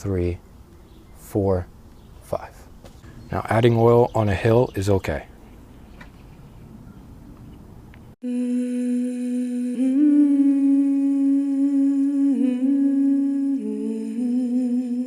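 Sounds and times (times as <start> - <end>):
person humming: 8.2 - 15.0.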